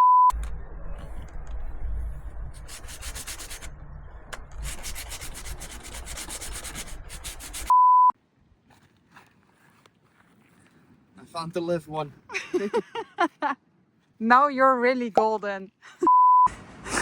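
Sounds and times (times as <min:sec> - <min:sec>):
short high beep: 0:00.0 - 0:00.4, 0:07.7 - 0:08.2, 0:16.1 - 0:16.5
wood sanding strokes: 0:02.6 - 0:03.7, 0:04.6 - 0:07.7.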